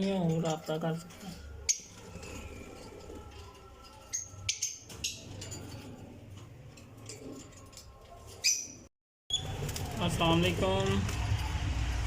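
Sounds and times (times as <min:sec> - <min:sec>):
lovebirds chirping: 0:00.0 - 0:05.7.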